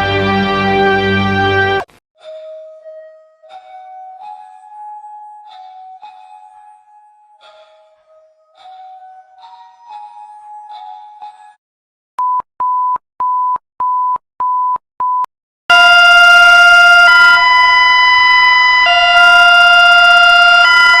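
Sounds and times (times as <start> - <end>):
sustained multi-tone alarm: 15.7 - 21.0.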